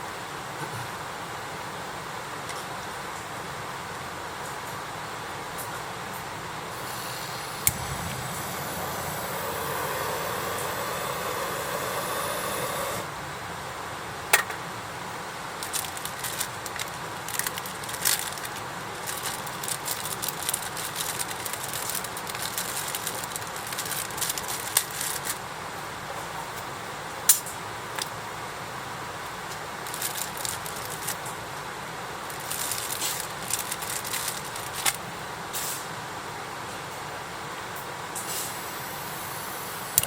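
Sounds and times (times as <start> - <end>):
rushing noise with faint tones: 5.6 - 14.0
campfire crackling and popping: 6.7 - 13.1.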